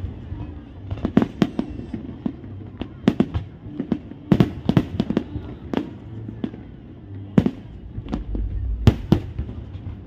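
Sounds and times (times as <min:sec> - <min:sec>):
fireworks bangs: 0:07.4 - 0:10.0
low rumble: 0:07.6 - 0:10.0.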